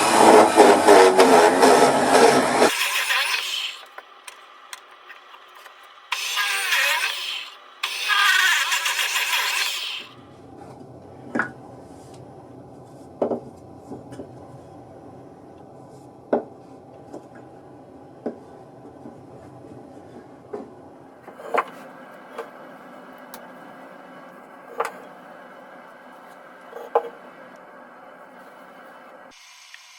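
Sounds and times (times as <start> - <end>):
hand tool rasping across wood: 0.0 - 3.9, 6.1 - 10.1
faint steady hum: 10.0 - 29.9.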